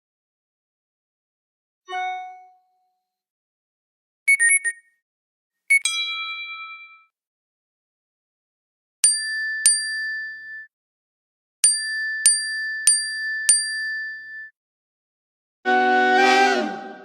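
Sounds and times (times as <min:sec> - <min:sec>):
bell-like notification dings: 0:01.9 - 0:02.8, 0:05.7 - 0:07.1.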